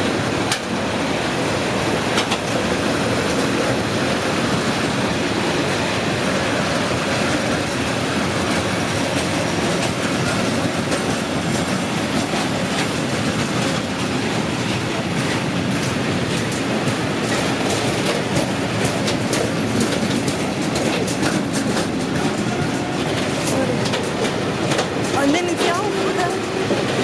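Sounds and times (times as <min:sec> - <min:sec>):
train wheels rumbling on rails: 0:00.0 - 0:27.0.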